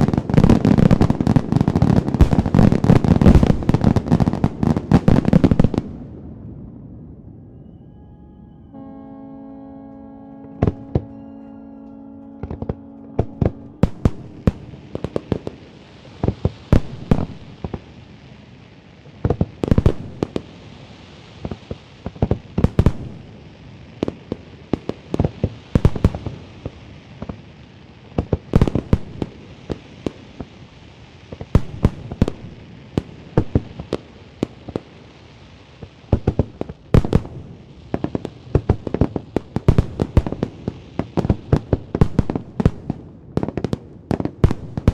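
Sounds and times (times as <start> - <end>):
fireworks bangs and pops: 0.0 - 6.4, 12.4 - 44.9
steady high hiss: 8.5 - 36.1.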